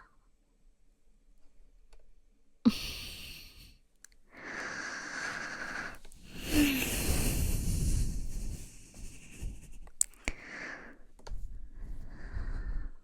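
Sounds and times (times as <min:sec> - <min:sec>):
woman sighing: 0:02.7 - 0:03.7, 0:04.8 - 0:08.0
woman breathing: 0:02.7 - 0:13.0.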